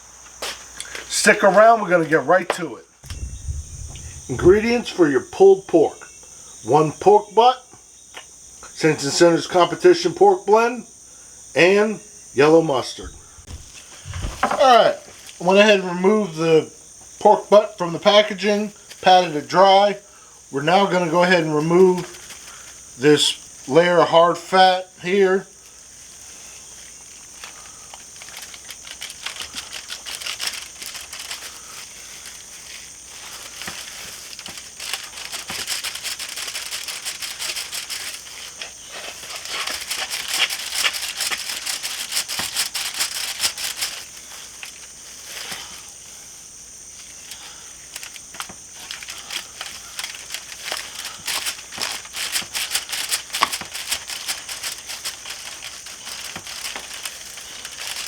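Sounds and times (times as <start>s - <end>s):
steady high hiss: 0.0s - 58.0s.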